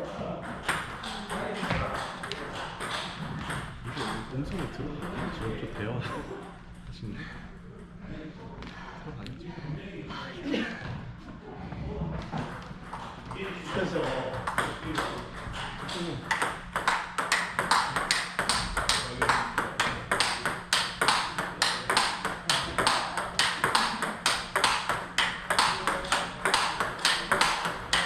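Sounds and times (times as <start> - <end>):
ping pong ball bouncing on table: 0.4 - 5.9, 12.4 - 28.0
ping pong ball hitting rackets: 0.4 - 5.9, 12.4 - 28.0.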